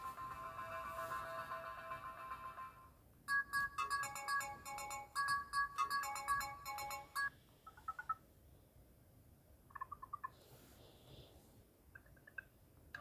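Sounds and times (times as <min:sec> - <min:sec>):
electronic phone melody: 0:00.0 - 0:07.3.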